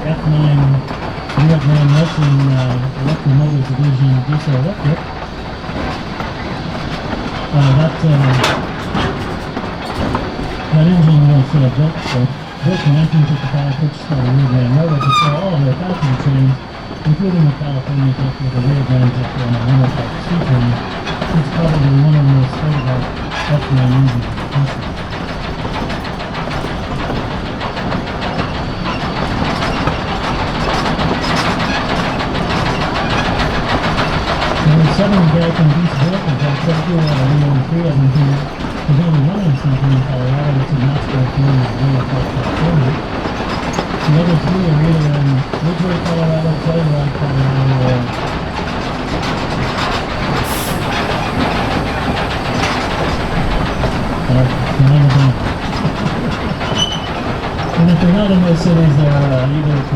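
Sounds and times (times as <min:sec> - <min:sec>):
train wheels clattering on rails: 0:00.0 - 0:59.9
brief hiss: 0:50.4 - 0:53.4.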